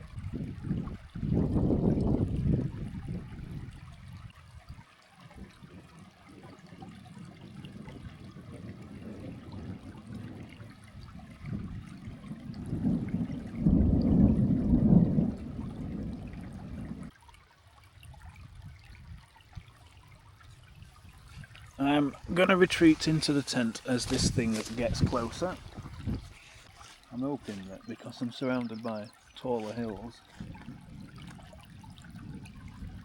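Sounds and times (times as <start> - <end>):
thunder rumbling: 7.8 - 17.1.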